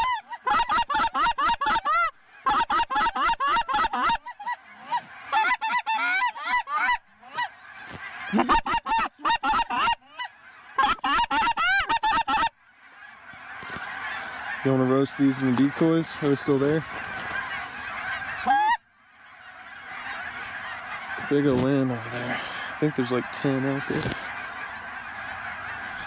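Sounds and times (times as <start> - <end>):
distant flock of geese calling: 0.0 - 26.0
geese honking and clucking: 0.0 - 26.0.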